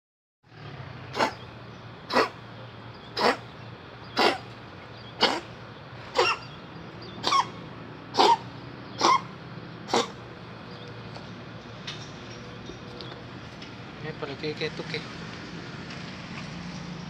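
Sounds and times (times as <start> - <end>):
cat coughing: 2.1 - 2.4, 3.2 - 3.4, 4.2 - 4.5, 5.2 - 5.5, 6.1 - 6.5, 7.2 - 7.6, 8.2 - 9.3, 9.9 - 10.2.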